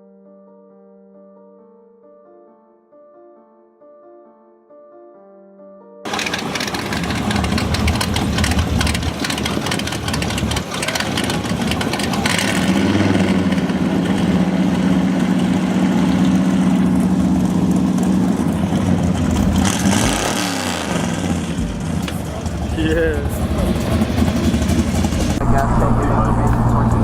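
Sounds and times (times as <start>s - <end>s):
vehicle engine running: 6.1s - 27.0s.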